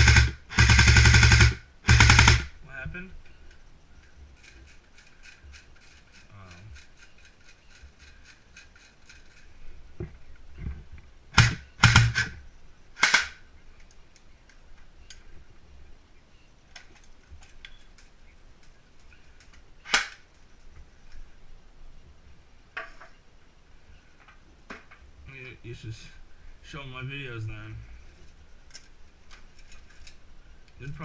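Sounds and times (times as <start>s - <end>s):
airsoft rifle shots: 0.0s - 2.5s, 11.3s - 12.4s, 13.0s - 13.4s, 19.8s - 20.3s.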